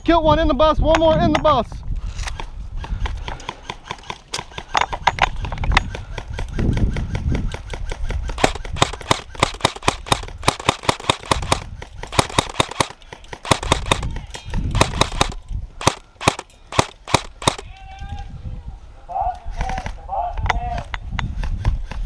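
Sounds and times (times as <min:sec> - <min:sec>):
airsoft gun firing: 0:06.2 - 0:17.7.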